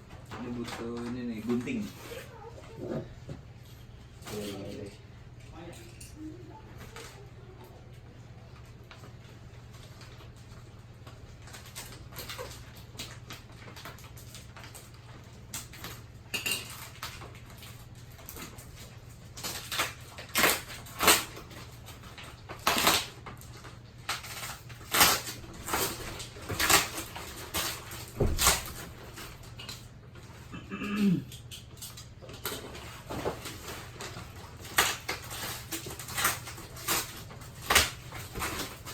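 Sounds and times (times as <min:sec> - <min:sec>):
plastic wrapping crinkling: 0:08.6 - 0:30.5, 0:31.6 - 0:38.9.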